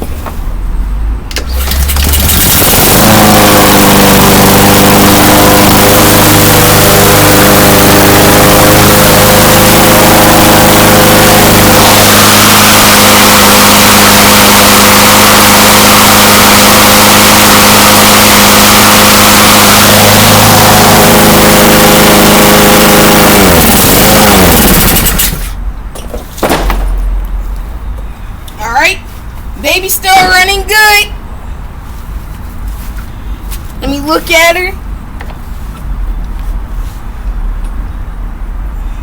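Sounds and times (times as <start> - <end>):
push mower engine running: 1.3 - 25.6
single thump: 25.9 - 27.1.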